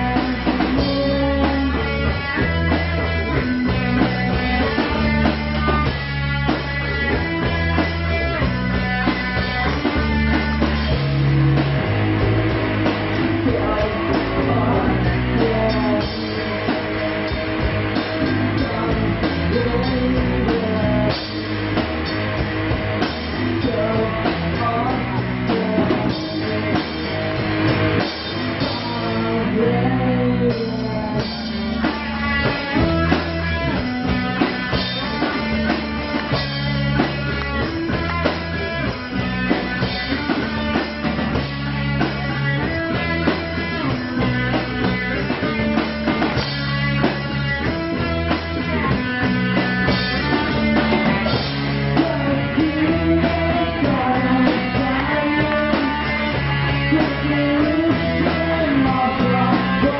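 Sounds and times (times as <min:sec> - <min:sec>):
bass guitar: 0:00.0 - 0:59.9
drum kit: 0:00.0 - 0:59.9
guitar: 0:00.0 - 0:59.9.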